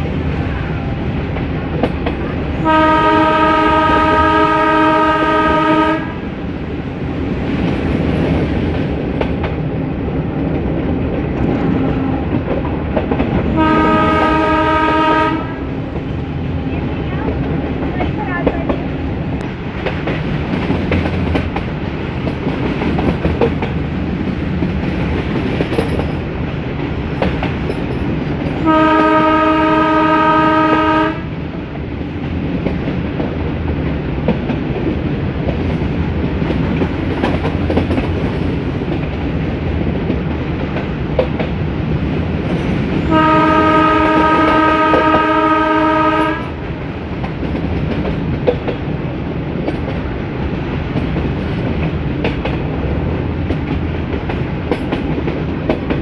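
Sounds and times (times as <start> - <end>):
rail clickety-clack: 0.0 - 56.0
train running noise: 0.0 - 56.0
locomotive horn blasts: 2.6 - 6.2, 13.6 - 15.7, 28.6 - 31.3, 43.1 - 46.6.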